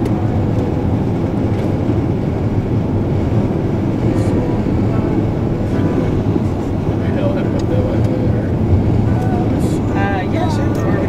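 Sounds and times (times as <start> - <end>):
car road and engine noise: 0.0 - 11.0.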